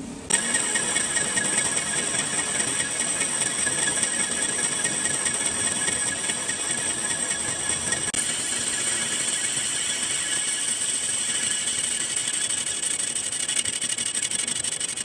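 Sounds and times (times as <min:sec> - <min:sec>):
lathe cutting metal: 0:00.3 - 0:15.0.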